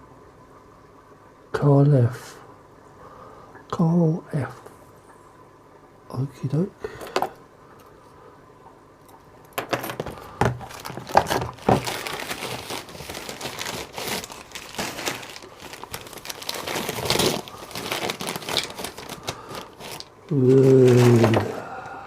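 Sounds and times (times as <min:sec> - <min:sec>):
packaging crinkling and rustling: 0:09.6 - 0:21.6.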